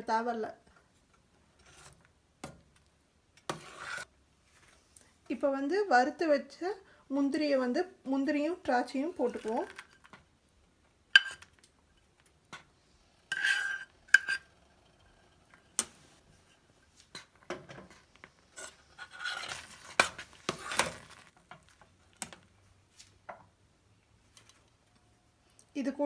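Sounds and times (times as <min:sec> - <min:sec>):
spoon scraping cooking pan: 0:03.4 - 0:04.1, 0:11.2 - 0:12.0, 0:13.3 - 0:22.4.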